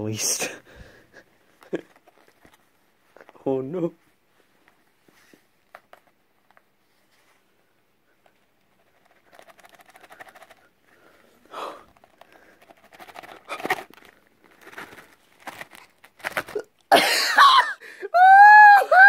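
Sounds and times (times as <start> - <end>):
package wrapping tearing: 12.0 - 16.8.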